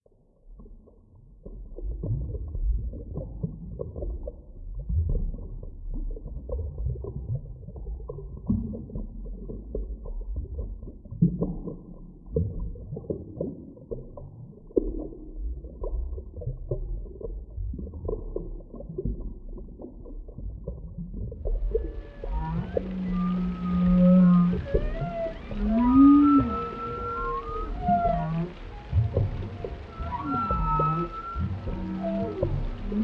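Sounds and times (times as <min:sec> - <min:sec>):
muffled underwater rumble: 0:00.0 - 0:33.0
short rising blips: 0:21.7 - 0:33.0.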